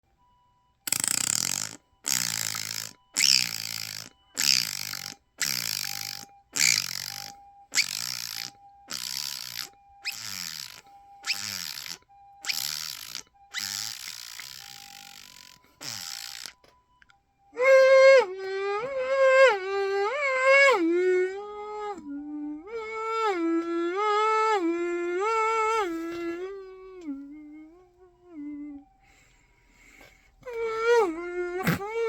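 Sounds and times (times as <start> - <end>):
faint two-tone ambulance siren: 0.0 - 32.0
person beatboxing: 31.6 - 32.0.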